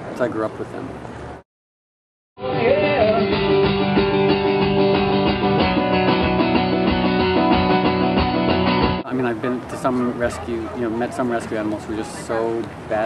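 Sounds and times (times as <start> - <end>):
guitar chords: 2.4 - 9.1.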